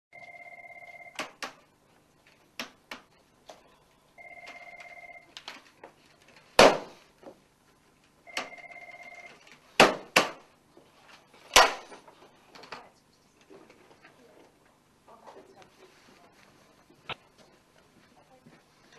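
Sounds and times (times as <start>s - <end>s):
telephone ringing: 0.1s - 1.3s, 4.2s - 5.4s, 8.2s - 9.5s
sharp loud bangs: 6.6s - 7.0s.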